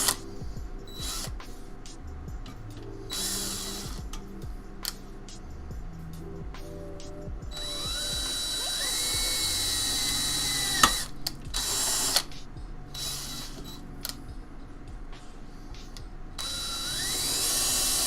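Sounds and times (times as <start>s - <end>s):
cordless drill motor whining: 0.0s - 1.4s, 3.1s - 4.4s, 7.4s - 12.3s, 13.0s - 14.2s, 16.4s - 18.0s.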